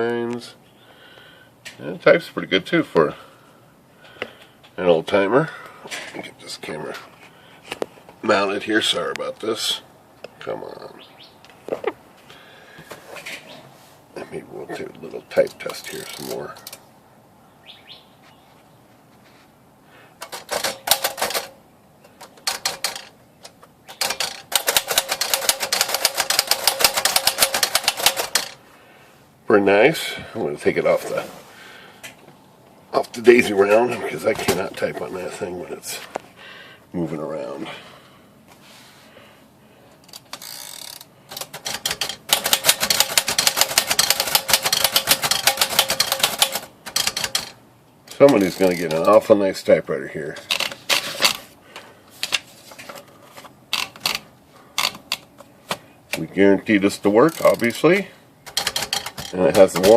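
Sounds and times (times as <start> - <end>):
manual typewriter keys striking: 20.2 - 23.1, 23.9 - 28.6, 40.2 - 49.3, 56.9 - 59.9.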